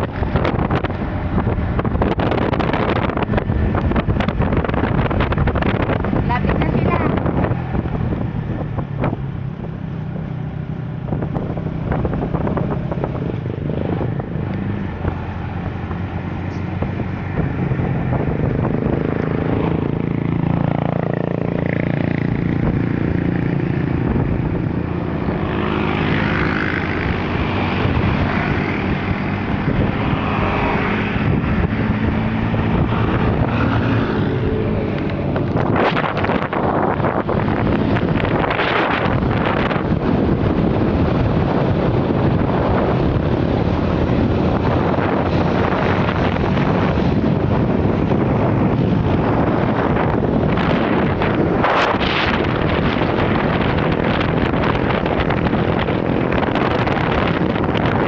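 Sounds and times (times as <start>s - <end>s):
road and wind noise: 0.0s - 58.0s
vehicle engine drone: 0.0s - 58.0s.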